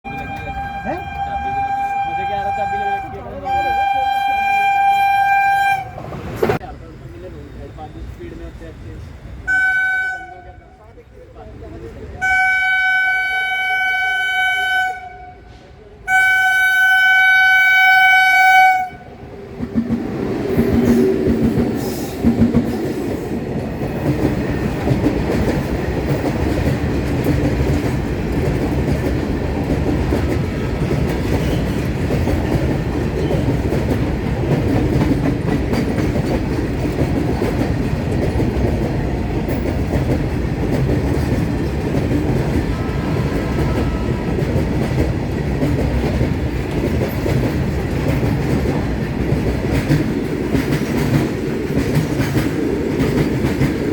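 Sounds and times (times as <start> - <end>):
locomotive horn blast: 0.0 - 6.1, 9.5 - 10.7, 12.2 - 19.1, 42.6 - 44.6
train rumbling past: 0.1 - 53.9.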